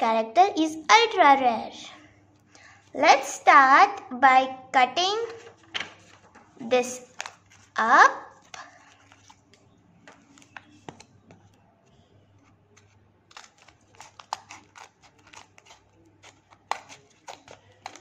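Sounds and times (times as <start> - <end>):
paper rustling: 5.2 - 11.6, 12.4 - 18.0
scissors snipping paper: 12.8 - 18.0.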